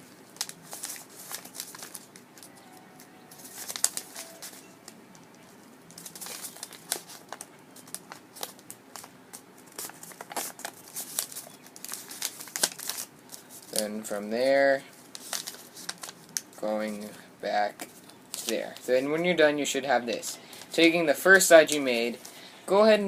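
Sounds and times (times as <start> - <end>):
paper rustling and crinkling: 0.0 - 13.9, 14.9 - 17.1, 17.8 - 19.0.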